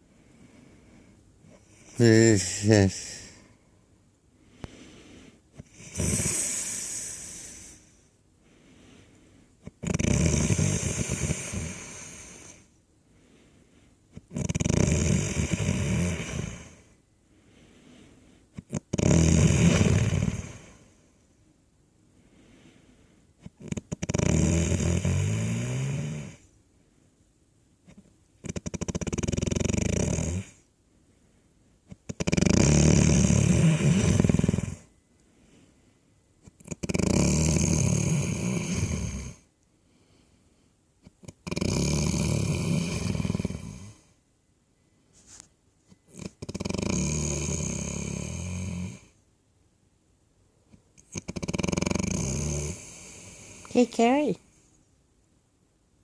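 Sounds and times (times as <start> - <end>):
loud rattling snoring: 5.6 - 7.8, 9.6 - 12.6, 14.2 - 16.9, 18.6 - 20.8, 23.4 - 26.4, 28.4 - 30.6, 31.9 - 34.9, 36.5 - 39.5, 41.2 - 44.1, 46.1 - 49.1, 51.0 - 53.9.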